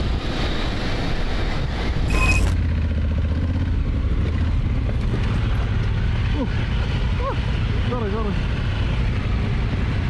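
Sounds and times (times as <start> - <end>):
engine and road rumble: 0.0 - 10.0.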